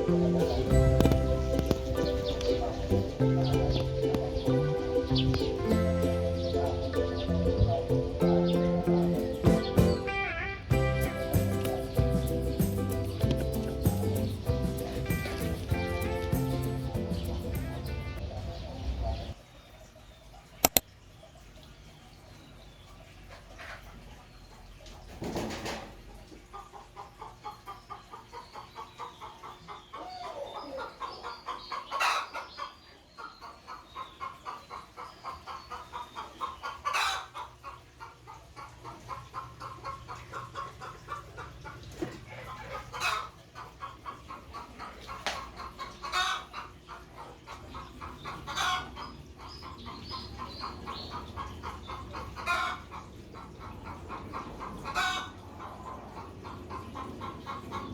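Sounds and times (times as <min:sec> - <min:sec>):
fowl clucking rapidly: 0:33.7 - 0:57.9.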